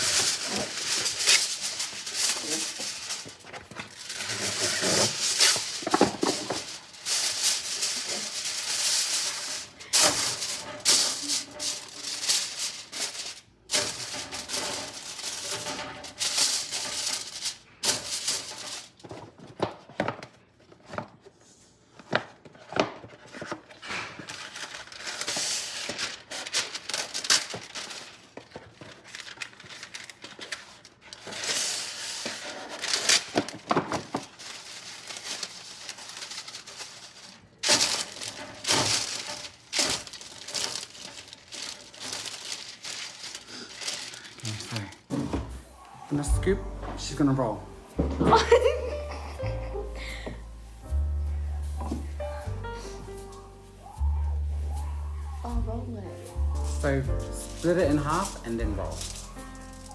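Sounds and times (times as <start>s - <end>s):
plastic wrap and paper crinkling: 0.0s - 59.9s
music: 46.2s - 59.9s.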